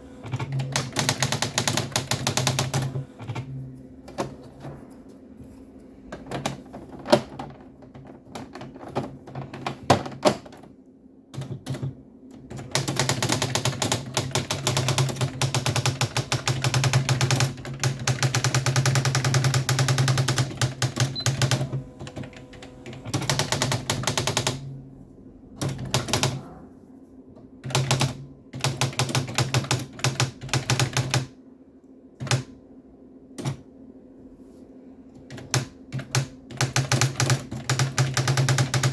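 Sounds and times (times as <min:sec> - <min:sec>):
steady low hum: 0:00.0 - 0:38.9
typewriter key strikes: 0:35.3 - 0:38.9.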